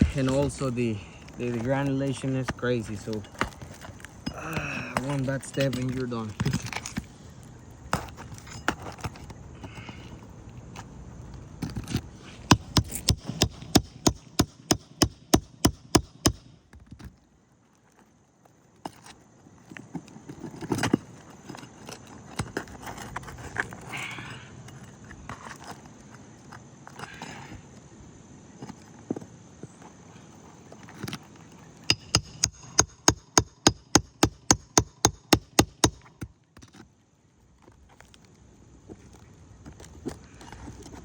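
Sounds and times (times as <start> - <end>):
knocks and scrapes: 0.0 - 7.2, 7.9 - 10.9, 18.8 - 24.1, 24.7 - 27.7
sharp metal taps: 12.5 - 16.5, 31.9 - 36.3.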